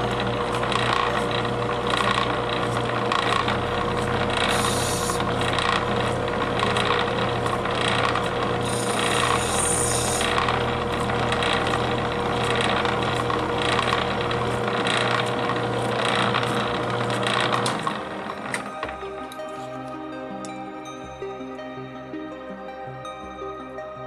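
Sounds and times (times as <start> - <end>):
gemstone scraping on spinning lap: 0.0 - 7.2, 7.8 - 18.0
motor hum: 0.0 - 20.5.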